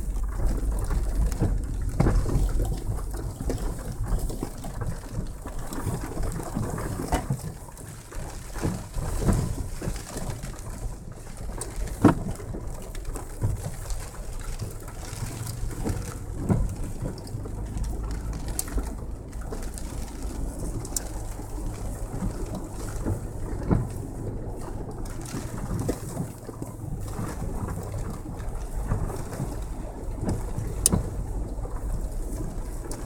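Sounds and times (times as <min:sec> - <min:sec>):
vehicle engine humming: 0:13.3 - 0:33.0.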